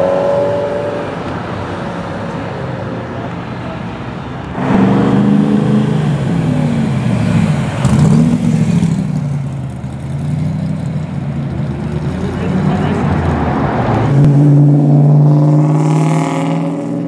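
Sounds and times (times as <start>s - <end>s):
car engine revving: 4.4s - 17.0s.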